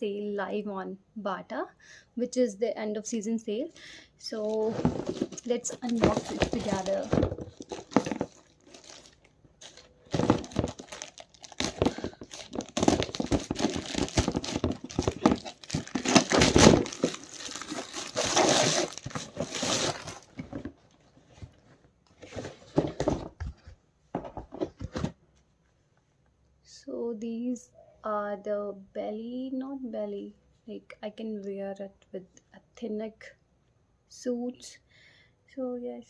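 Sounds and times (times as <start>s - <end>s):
packaging rustling and ripping: 4.4s - 20.7s.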